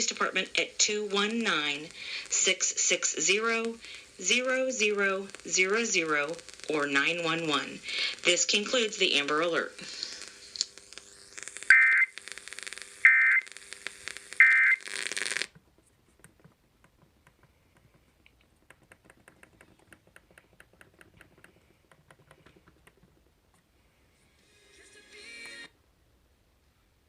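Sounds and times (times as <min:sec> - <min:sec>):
broadcast hiss: 0:00.0 - 0:27.0
two-tone digital data bursts: 0:11.2 - 0:15.5
faint ticking: 0:16.2 - 0:23.7.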